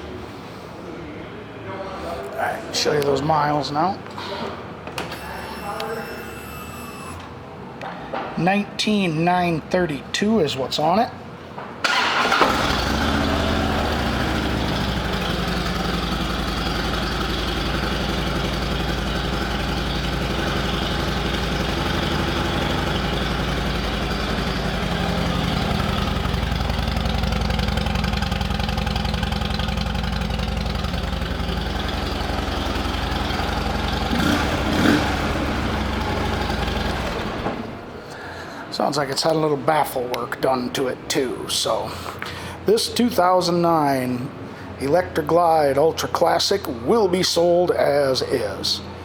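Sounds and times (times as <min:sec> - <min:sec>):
motorcycle engine idling: 0:12.1 - 0:37.7.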